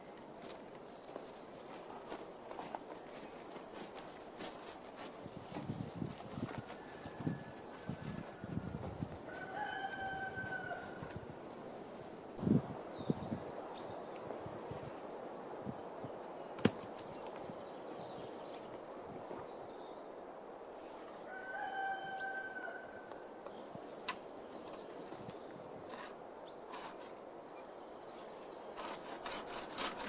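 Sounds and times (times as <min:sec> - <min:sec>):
outdoor background noise: 0:00.0 - 0:30.0
small bird singing: 0:27.4 - 0:30.0.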